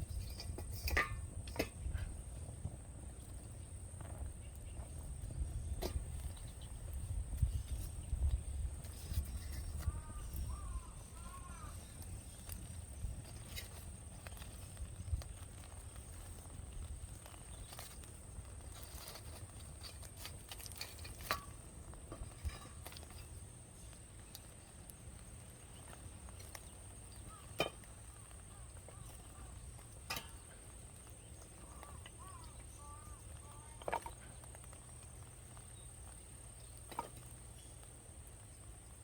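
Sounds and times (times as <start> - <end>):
wood fire crackling: 0.0 - 39.0
bird chirping: 4.3 - 16.1, 25.6 - 34.8.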